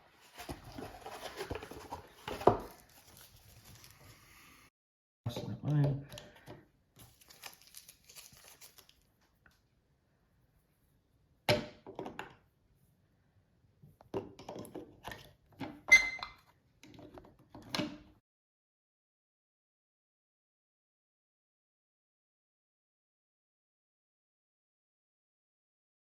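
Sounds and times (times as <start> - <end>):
packaging crinkle: 0.2 - 4.2, 7.0 - 9.1.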